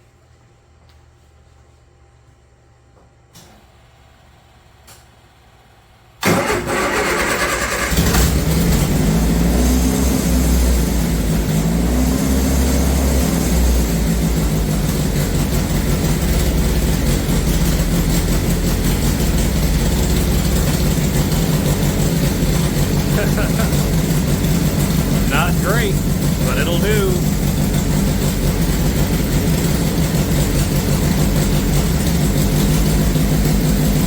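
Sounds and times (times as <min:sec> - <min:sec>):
starter cranking engine: 0:06.2 - 0:09.2
car engine idling: 0:13.0 - 0:34.0
person speaking: 0:23.1 - 0:23.8, 0:25.2 - 0:27.3.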